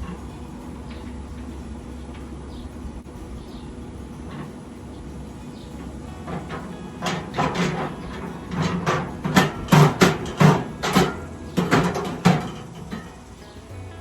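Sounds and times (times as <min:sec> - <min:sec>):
metal grill parts clanking: 0:00.0 - 0:14.0.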